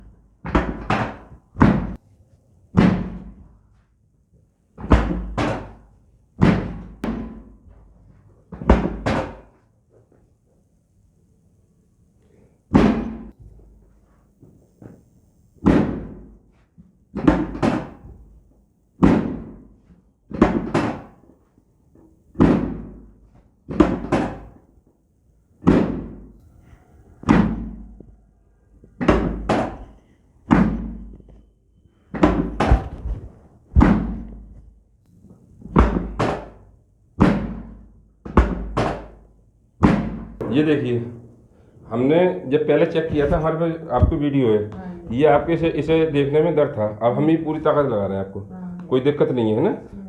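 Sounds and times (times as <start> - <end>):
heavy thuds: 32.1 - 34.8, 39.8 - 47.0.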